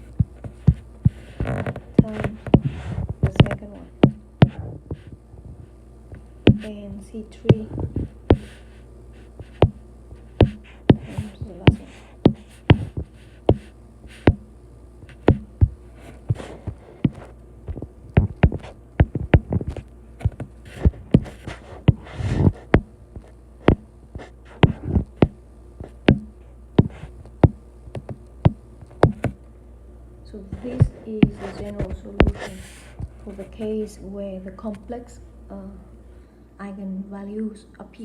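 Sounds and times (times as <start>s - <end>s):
pen tapping and scratching: 0.4s - 5.1s, 6.4s - 6.8s, 7.4s - 8.6s, 9.4s - 14.4s, 15.0s - 29.4s, 30.5s - 32.6s.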